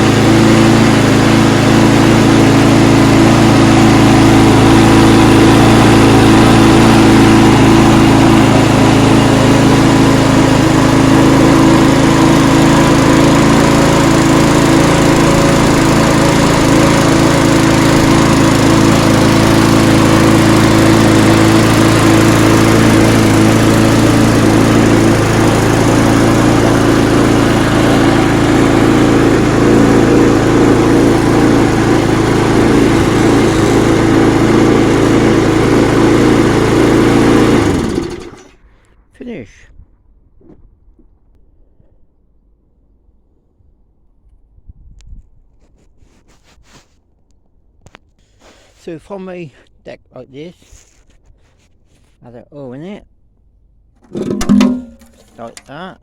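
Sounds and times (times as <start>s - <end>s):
lawnmower engine running: 0.0s - 38.9s, 54.0s - 55.8s.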